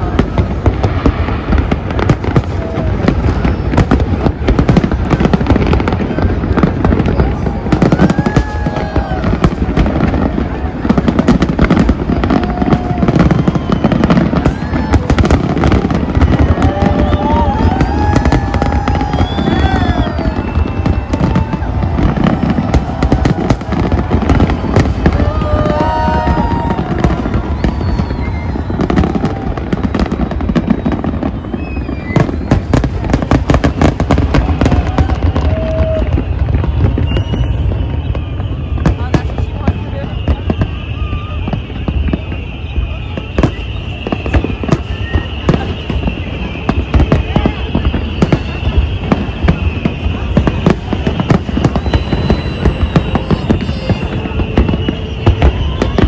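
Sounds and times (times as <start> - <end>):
fireworks bangs and crackles: 0.0 - 56.0.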